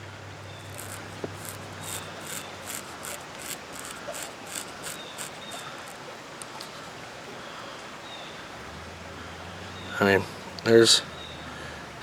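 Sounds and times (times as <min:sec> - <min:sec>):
knife blade scraping hair: 0:00.7 - 0:05.6.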